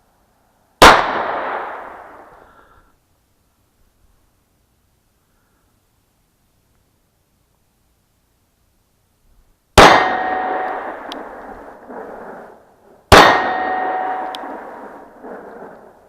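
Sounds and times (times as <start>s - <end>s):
pistol shots: 0.8s - 2.3s, 9.8s - 16.0s
steel target ringing: 9.8s - 11.0s, 13.1s - 14.6s.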